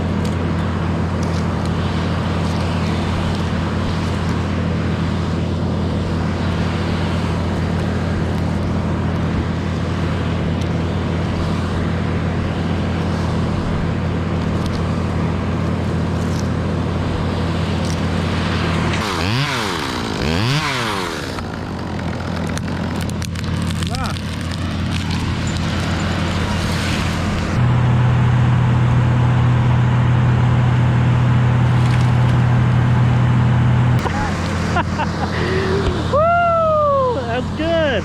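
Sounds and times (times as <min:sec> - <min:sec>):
chainsaw idling and revving: 0:00.0 - 0:27.6.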